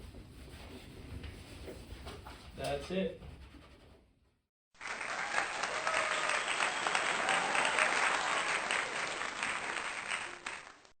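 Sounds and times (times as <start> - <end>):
crowd applause: 4.8 - 11.0.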